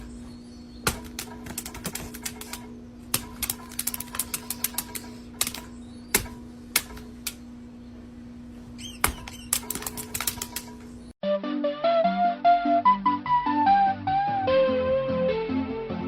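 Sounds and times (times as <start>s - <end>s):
steady hum: 0.0s - 11.2s
sharp clicks and taps: 9.0s - 10.8s
flute music: 11.2s - 16.0s.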